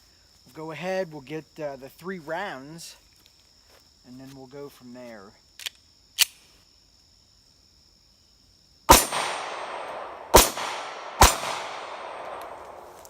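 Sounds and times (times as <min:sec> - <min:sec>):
pistol shots echoing: 0:08.9 - 0:13.0.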